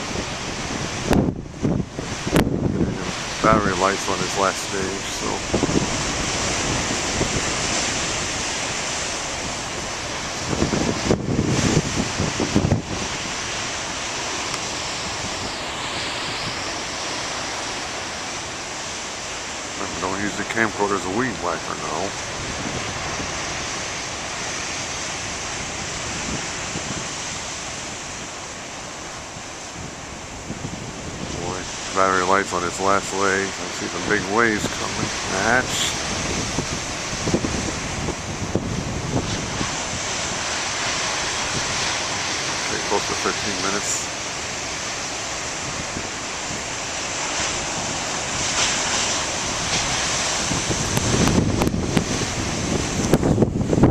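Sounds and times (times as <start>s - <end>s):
ocean waves breaking: 0.0s - 53.9s
wind buffeting microphone: 0.0s - 53.9s.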